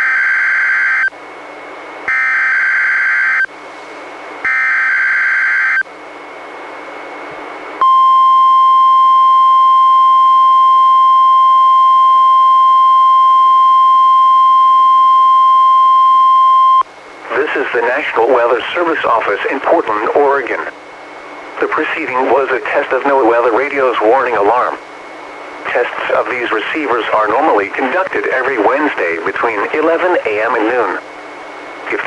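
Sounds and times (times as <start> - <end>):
steady warning alarm tone: 2.1 - 3.5, 4.4 - 5.8, 7.8 - 16.8
radio hiss: 16.3 - 31.1, 31.8 - 32.0.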